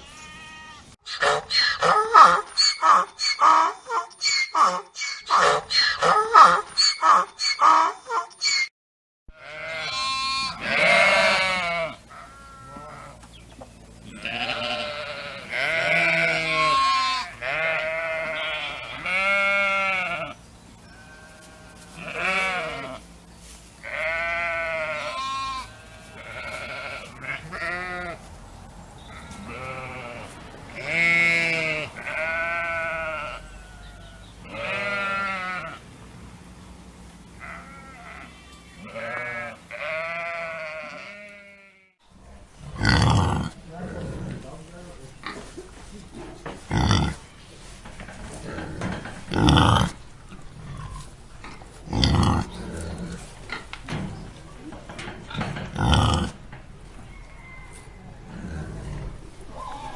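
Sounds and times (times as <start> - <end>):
livestock bleating: 0.0 - 1.0, 9.3 - 13.4, 14.0 - 23.2, 23.8 - 28.3, 29.0 - 35.8, 37.4 - 42.0, 42.8 - 44.4, 46.7 - 47.4, 48.4 - 50.0, 51.8 - 53.2.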